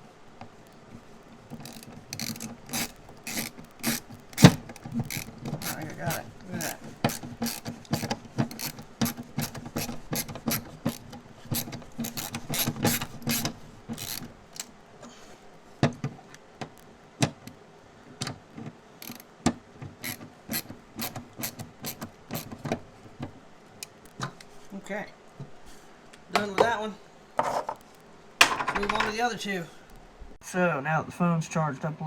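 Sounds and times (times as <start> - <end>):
hand ratchet clicking: 1.5 - 14.7, 19.0 - 19.3, 20.0 - 22.7.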